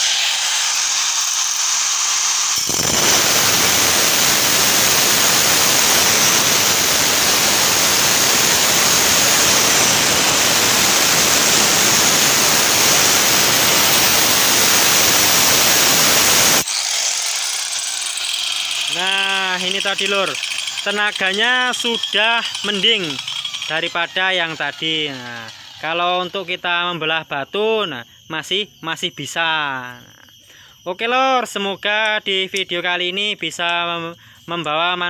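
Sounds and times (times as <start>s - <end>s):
angle grinder cutting stone: 0.0s - 26.4s
angle grinder whining: 0.0s - 26.5s.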